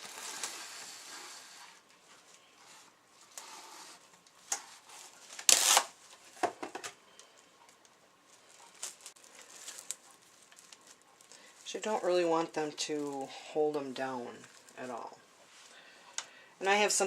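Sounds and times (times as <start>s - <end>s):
plastic wrap crinkling: 0.0s - 1.1s, 4.2s - 6.2s, 7.2s - 15.2s.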